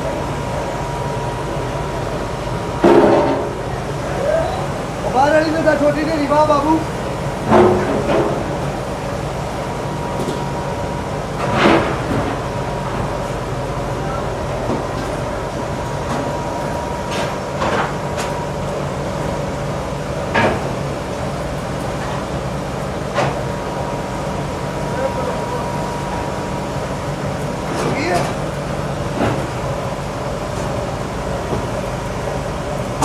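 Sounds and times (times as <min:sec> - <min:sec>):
machinery humming: 0:00.0 - 0:33.0.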